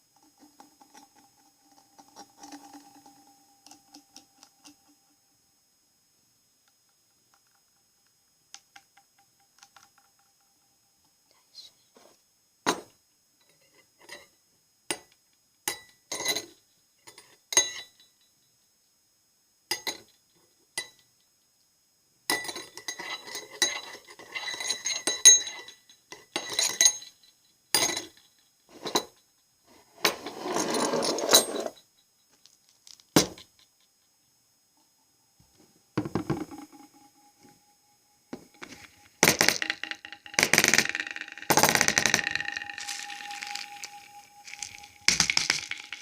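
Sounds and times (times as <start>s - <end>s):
small hard objects clinking: 30.4s - 33.5s, 38.4s - 46.0s.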